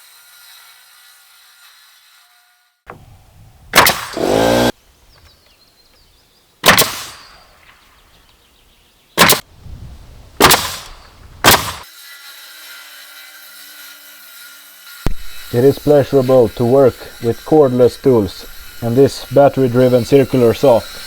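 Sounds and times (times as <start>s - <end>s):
nail gun shots into wood: 3.7s - 4.7s, 6.6s - 7.3s, 9.2s - 9.4s, 10.4s - 11.9s.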